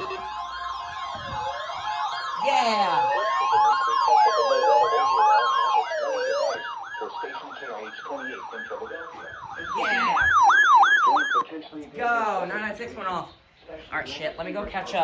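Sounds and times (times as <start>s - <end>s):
two-note alternating siren tone: 0.0s - 11.4s
wailing sirens: 0.0s - 11.4s
yelping siren: 0.0s - 11.4s.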